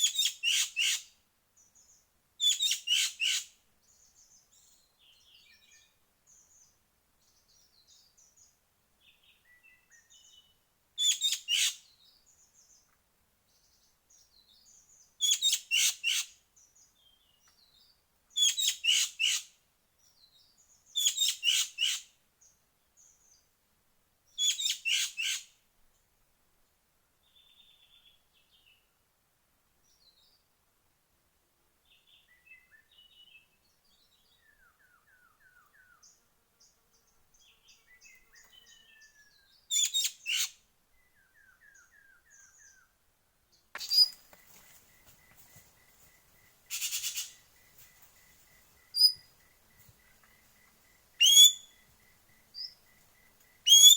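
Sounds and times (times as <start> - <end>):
faint bird calls and trills: 0.0 - 23.6, 24.3 - 26.1, 31.8 - 53.9
bird chattering: 46.7 - 47.5, 48.8 - 49.2, 51.2 - 51.7, 53.6 - 53.9.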